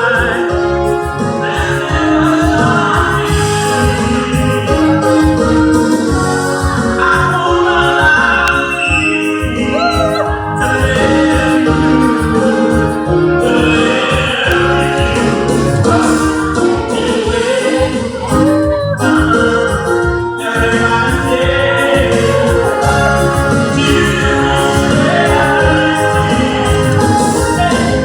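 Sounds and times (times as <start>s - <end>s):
keyboard chords: 0.0s - 28.0s
steady beat: 0.2s - 28.0s
person singing long notes: 6.9s - 28.0s.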